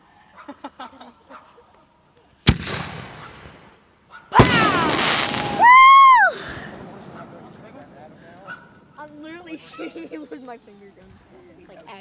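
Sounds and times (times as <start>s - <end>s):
firework bangs: 2.5s - 3.8s, 4.4s - 9.0s
loud drawn-out cry: 4.4s - 7.4s.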